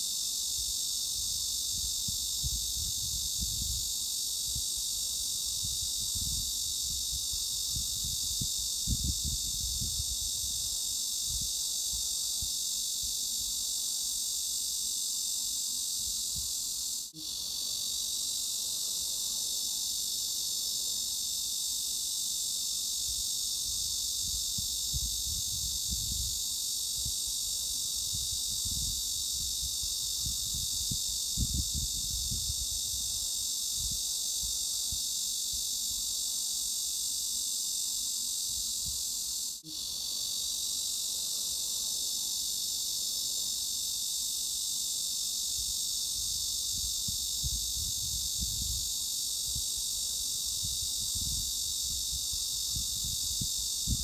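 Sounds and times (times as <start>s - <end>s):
cicadas buzzing: 0.0s - 54.0s.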